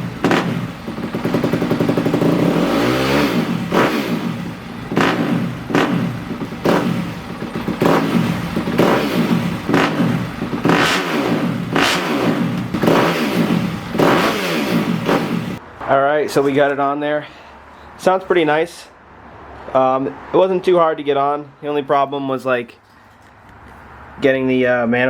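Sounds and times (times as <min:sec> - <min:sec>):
motorcycle engine revving: 0:00.0 - 0:15.6.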